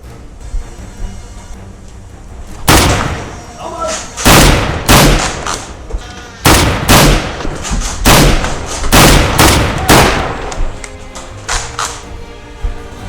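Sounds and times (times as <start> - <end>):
loud gunshot-like blasts: 2.7 - 3.4, 4.2 - 5.6, 6.4 - 10.5.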